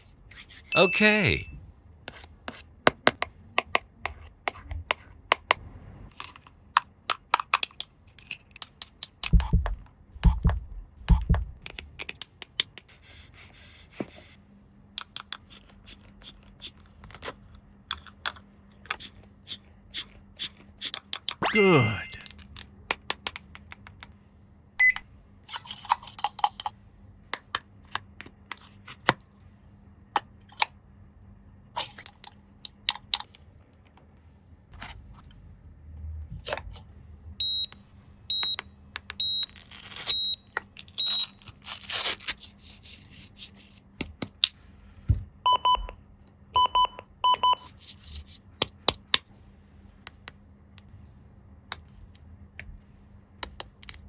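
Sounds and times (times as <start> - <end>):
toy electronic beeps: 37.4 - 38.6, 39.2 - 39.5, 40.1 - 40.4.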